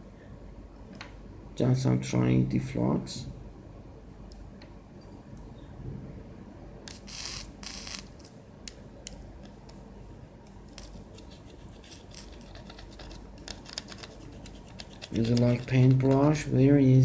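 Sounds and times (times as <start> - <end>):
scratchy soldering hisses: 6.9 - 8.3
soldering tool ticking and scraping: 6.9 - 9.6.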